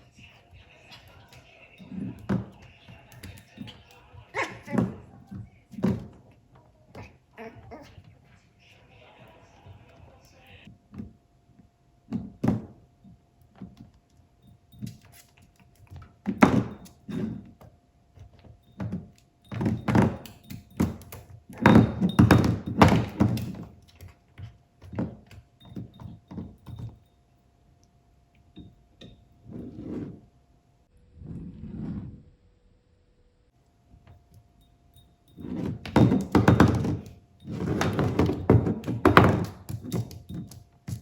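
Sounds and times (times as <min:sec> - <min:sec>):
dog plate clattering on floor: 0:00.9 - 0:06.2, 0:18.2 - 0:27.0, 0:35.3 - 0:41.0.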